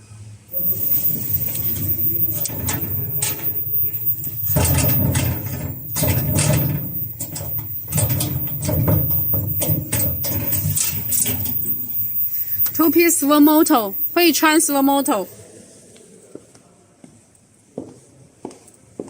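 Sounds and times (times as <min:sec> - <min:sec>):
low machine rumble: 0:00.5 - 0:14.2
machine clicks and clacks: 0:00.5 - 0:15.2.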